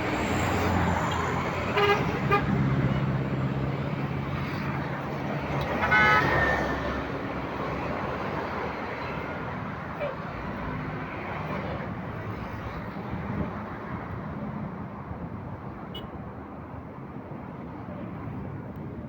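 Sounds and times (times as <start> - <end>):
passing vehicle engine and tyres: 0.0 - 15.7.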